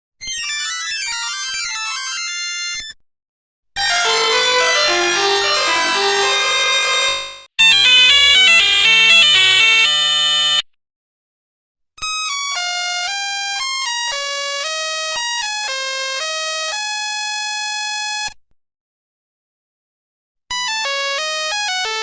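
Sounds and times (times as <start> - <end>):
beeping ringtone melody: 3.9 - 7.4
electronic ringtone melody: 3.9 - 7.4.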